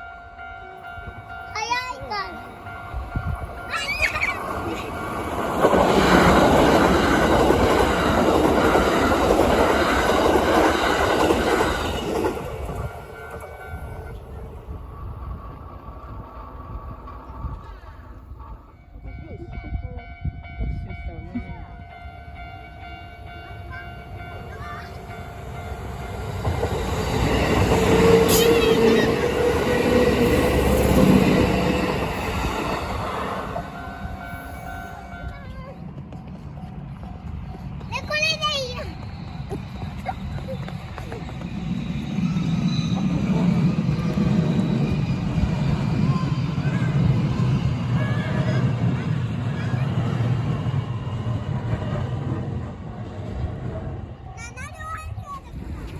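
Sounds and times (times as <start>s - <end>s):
train running past: 0.0s - 55.9s.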